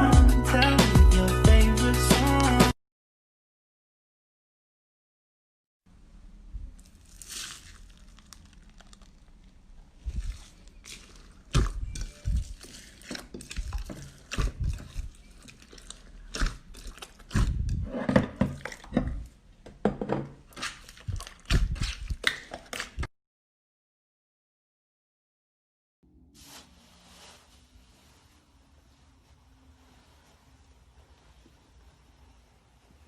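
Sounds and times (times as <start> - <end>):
slime clicking and thudding: 10.2 - 17.6.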